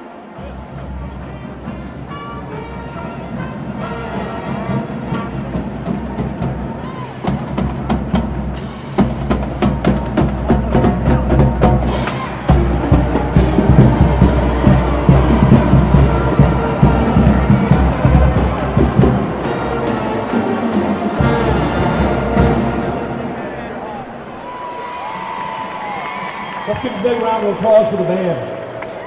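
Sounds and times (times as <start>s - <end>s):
marching band playing: 0.0s - 28.3s
drums and percussion strikes: 0.4s - 23.3s.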